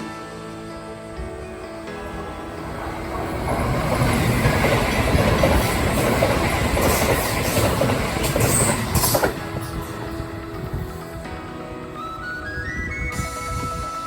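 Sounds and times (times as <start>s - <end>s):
train wheels rumbling on rail: 2.0s - 11.6s.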